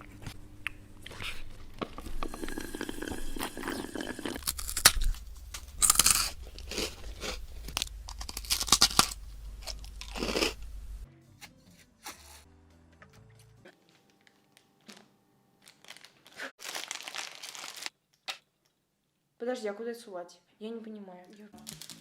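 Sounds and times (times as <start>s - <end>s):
crunching and chewing food: 0.1s - 11.1s, 21.6s - 22.0s.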